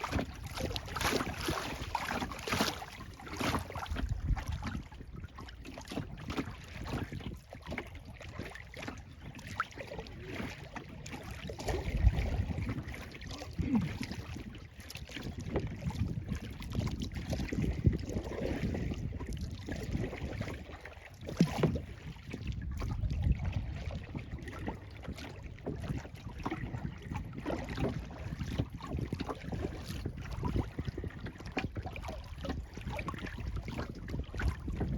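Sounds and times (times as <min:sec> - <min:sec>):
paddle splashing in water: 0:00.0 - 0:34.9
water lapping against hull: 0:00.0 - 0:34.9
wind rumbling on microphone: 0:00.0 - 0:34.9.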